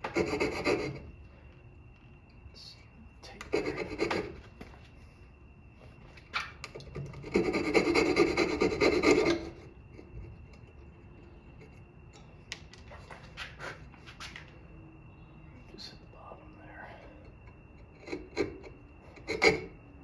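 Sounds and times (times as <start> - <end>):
hand tool scraping wood: 0.0 - 1.0, 3.5 - 4.4, 7.0 - 10.7, 17.8 - 19.8.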